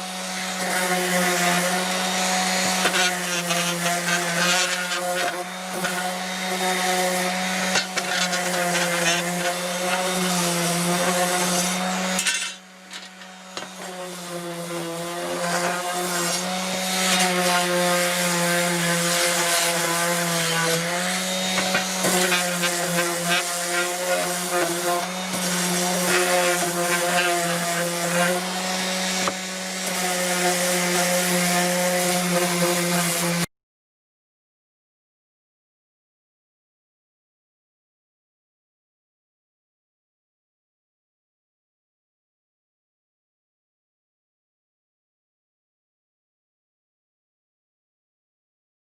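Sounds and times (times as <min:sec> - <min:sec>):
orbital sander running: 0:00.0 - 0:33.5.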